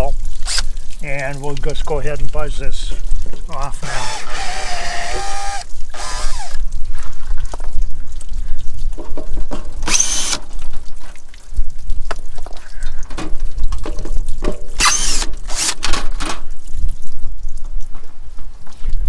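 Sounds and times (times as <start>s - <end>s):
cordless drill spinning: 0.4s - 0.7s, 3.8s - 6.6s, 9.9s - 10.4s, 14.8s - 15.8s.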